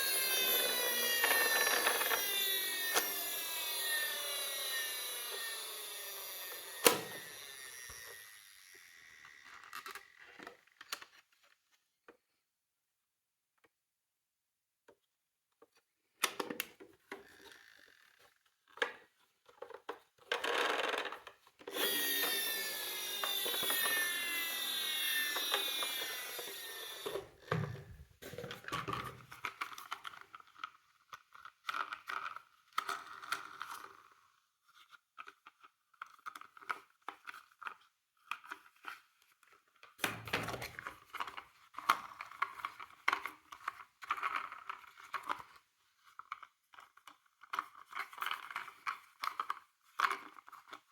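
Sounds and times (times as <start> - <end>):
plastic toy clicks and rattles: 0.0 - 8.3, 16.2 - 50.9
mechanical whir: 0.0 - 9.3, 21.7 - 27.8.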